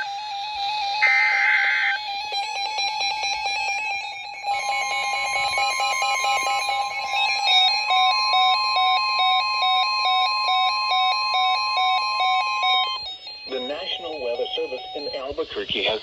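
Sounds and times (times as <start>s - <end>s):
pulsing beeping tone: 1.0s - 11.5s, 12.1s - 15.4s
steady alert tone: 13.2s - 15.3s
data burst tones: 13.3s - 15.8s.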